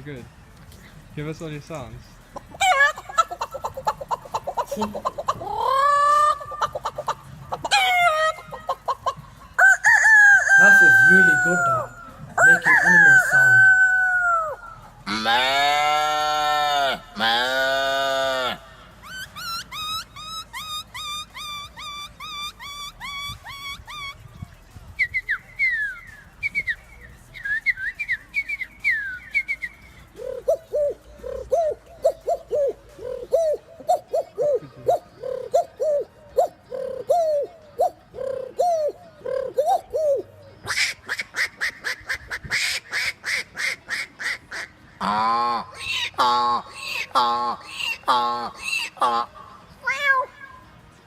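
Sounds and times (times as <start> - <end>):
man imitating quacking calls: 3.0 - 8.8, 15.1 - 18.7, 40.8 - 49.5
man imitating pigeon coos: 3.8 - 8.7, 30.1 - 40.4
man whistling bird chirps: 25.0 - 29.8.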